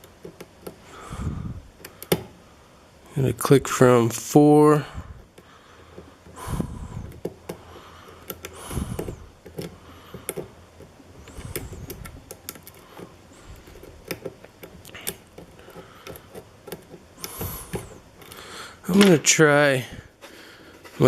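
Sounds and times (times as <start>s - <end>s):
soft handling rustles: 5.2s - 21.0s
lock pick clicks and scrapes: 8.2s - 18.4s.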